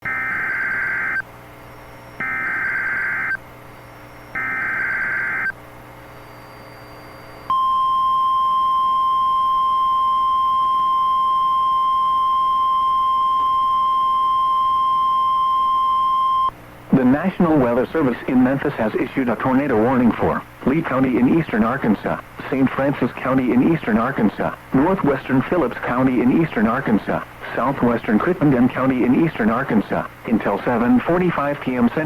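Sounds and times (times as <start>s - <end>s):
steady high alarm beep: 2.1s - 3.4s, 4.1s - 5.6s, 6.5s - 16.5s.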